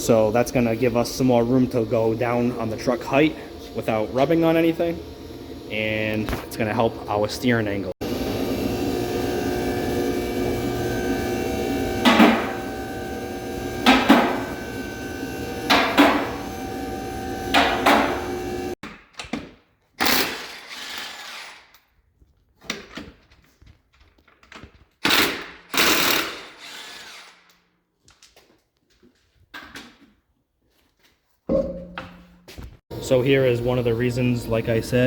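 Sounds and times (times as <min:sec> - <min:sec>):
steady machine hum: 0:00.0 - 0:18.8, 0:32.9 - 0:35.0
impact wrench bursts: 0:17.5 - 0:18.7, 0:20.0 - 0:21.6, 0:25.0 - 0:27.5.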